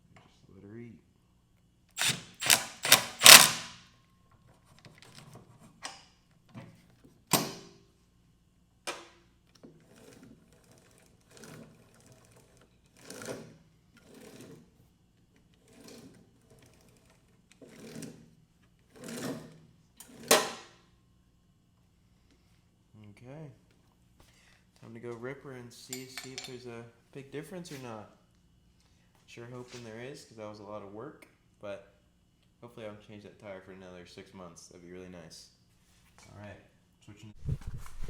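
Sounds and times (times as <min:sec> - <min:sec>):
impact wrench hammering: 0:02.0 - 0:03.8.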